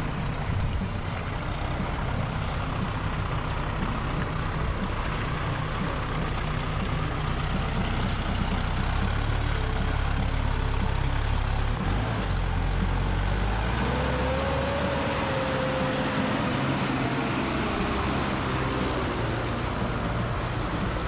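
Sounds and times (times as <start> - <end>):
tractor engine running: 0.0 - 21.0.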